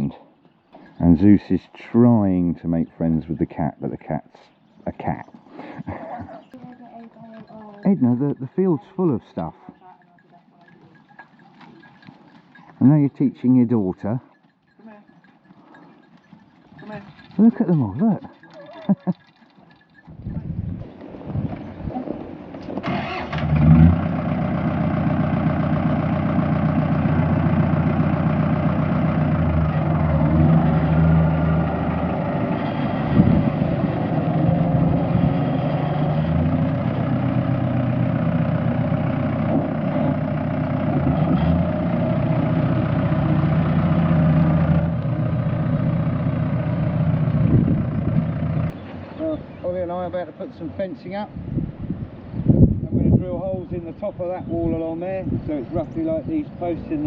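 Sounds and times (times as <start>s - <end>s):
generator engine running: 22.8s - 49.1s.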